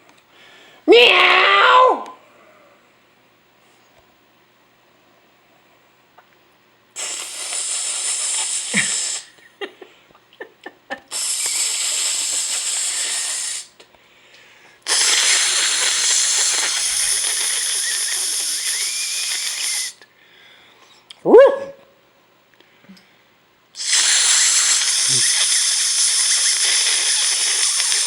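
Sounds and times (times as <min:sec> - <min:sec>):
loud hissing: 0:07.0 - 0:09.4, 0:11.1 - 0:13.8, 0:14.9 - 0:20.0, 0:23.8 - 0:28.0.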